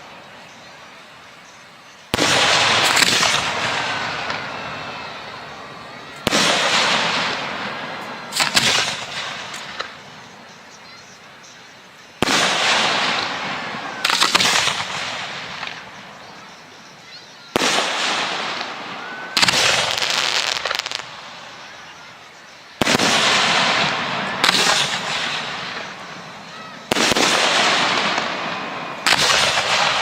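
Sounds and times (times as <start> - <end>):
firework crackling: 0.0 - 16.9, 17.5 - 30.0
firework shells bursting: 2.1 - 4.7, 6.1 - 10.1, 12.2 - 16.0, 17.5 - 21.6, 22.8 - 30.0.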